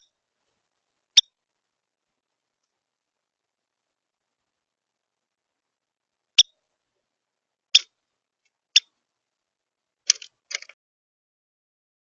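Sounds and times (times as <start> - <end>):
small bird chip calls: 1.1 - 1.4, 7.7 - 8.0.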